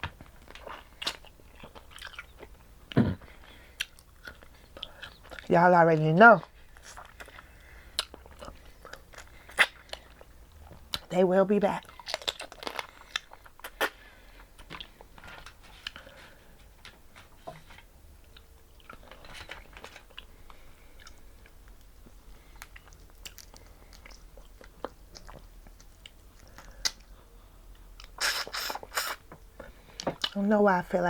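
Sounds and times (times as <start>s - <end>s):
chewing and biting seafood: 0.4s - 5.5s, 6.6s - 11.1s, 11.8s - 16.1s, 18.3s - 27.1s.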